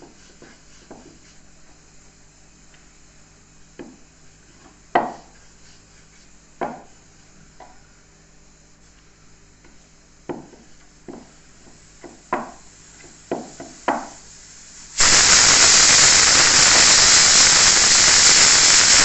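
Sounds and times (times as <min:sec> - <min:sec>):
steam hissing: 0:12.0 - 0:19.0
pressure cooker whistle: 0:14.8 - 0:19.0.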